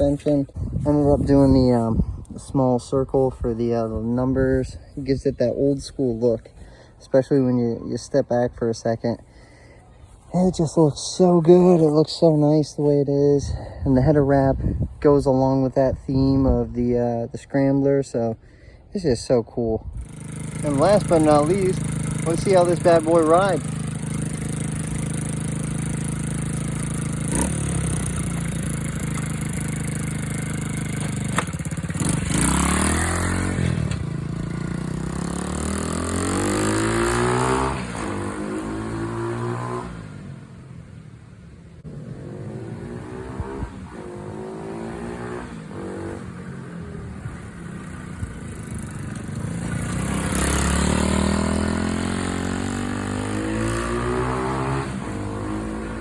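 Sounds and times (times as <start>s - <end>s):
small motorbike engine revving: 20.0s - 40.8s, 41.8s - 56.0s.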